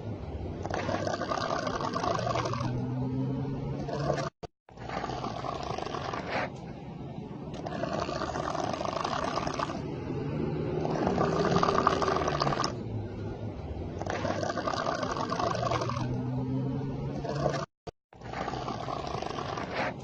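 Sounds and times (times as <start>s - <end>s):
person snoring: 0.7s - 2.8s, 3.8s - 6.5s, 7.6s - 9.8s, 10.8s - 12.8s, 17.2s - 20.0s.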